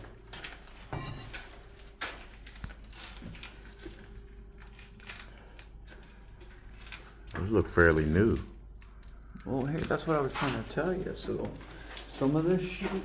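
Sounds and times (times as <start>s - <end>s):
footsteps: 9.8s - 13.0s.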